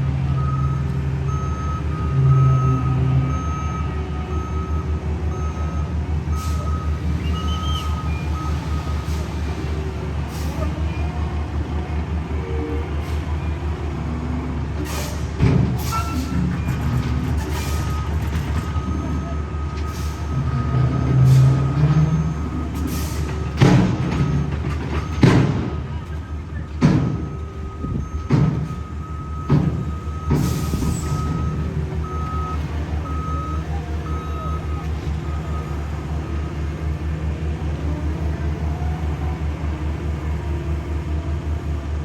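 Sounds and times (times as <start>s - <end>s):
diesel paving equipment running: 0.0s - 42.0s.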